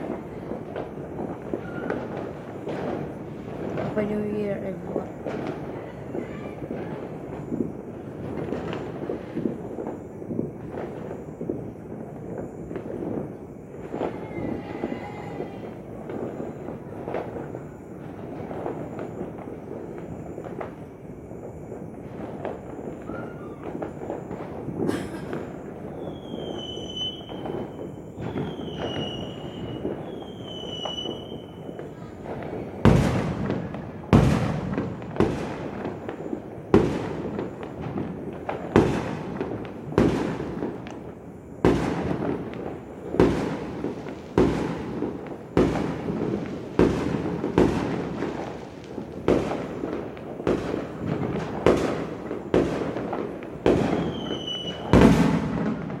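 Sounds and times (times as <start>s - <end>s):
fireworks bangs: 0.0s - 56.0s.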